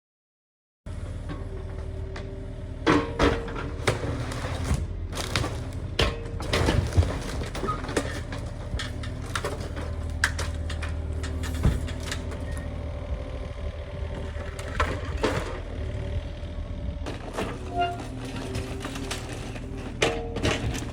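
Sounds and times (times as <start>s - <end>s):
debris knocking: 5.2s - 13.0s
machine engine running: 5.2s - 20.9s.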